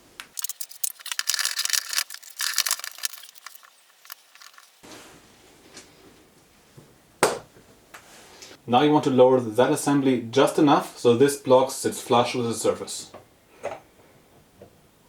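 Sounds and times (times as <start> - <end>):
metal parts clicking and scraping: 0.3 - 4.8.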